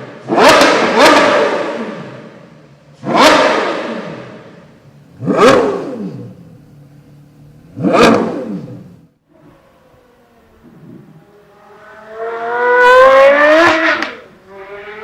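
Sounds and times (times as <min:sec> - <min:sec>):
engine revving: 0:00.0 - 0:02.4, 0:03.0 - 0:09.2, 0:10.7 - 0:15.0
engine idling: 0:04.7 - 0:09.2.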